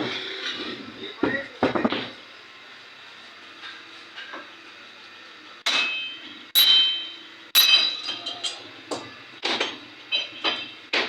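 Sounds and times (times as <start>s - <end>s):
hammer striking metal: 5.7s - 8.6s.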